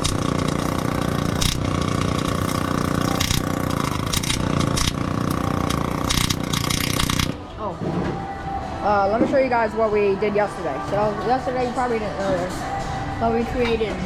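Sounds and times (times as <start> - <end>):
welder crackling buzz: 0.0 - 7.4
welding pops and crackles: 0.0 - 7.4.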